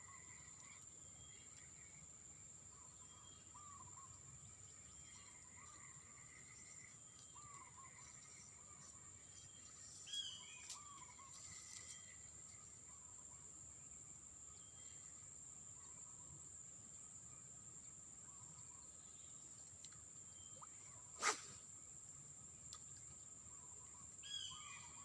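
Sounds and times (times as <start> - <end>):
short bird chirps: 20.4 - 21.7.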